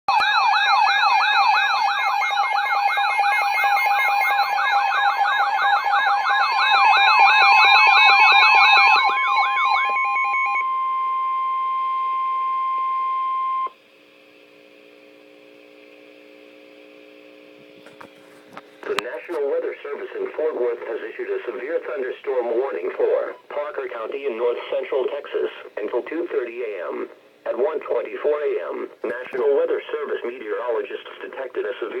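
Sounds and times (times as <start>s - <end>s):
warbling siren-like tone: 0.1s - 13.7s
steady alarm tone: 0.1s - 13.8s
beeping tones: 1.7s - 13.7s
faint radio hum: 17.6s - 32.0s.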